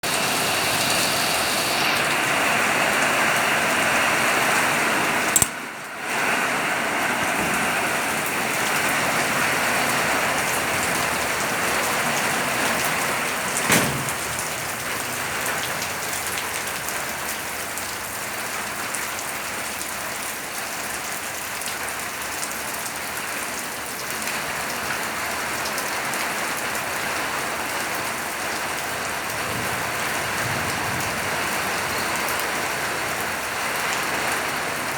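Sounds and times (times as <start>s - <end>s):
heavy rain pattering: 0.0s - 34.9s
sharp click: 5.3s - 5.6s.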